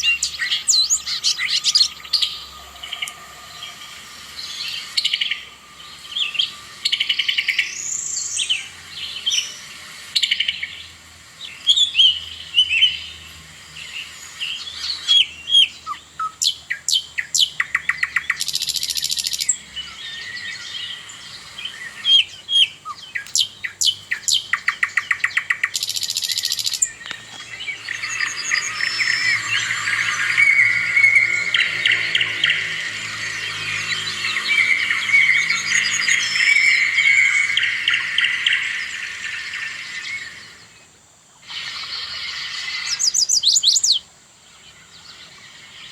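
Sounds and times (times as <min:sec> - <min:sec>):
buzzy bird call: 0:00.0 - 0:40.8, 0:41.4 - 0:44.0
songbirds singing and chirping: 0:00.0 - 0:45.9.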